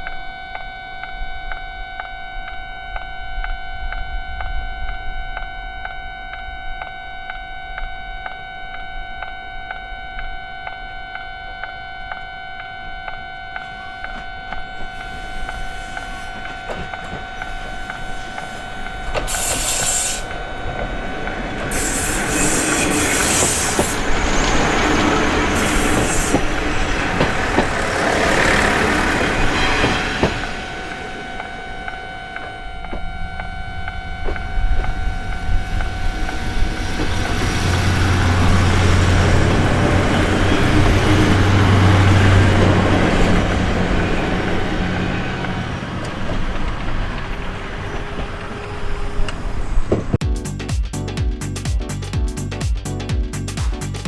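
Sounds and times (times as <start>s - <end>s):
level-crossing bell ringing: 10.2s - 49.2s
train approaching: 10.2s - 50.2s
high squealing: 15.0s - 50.1s.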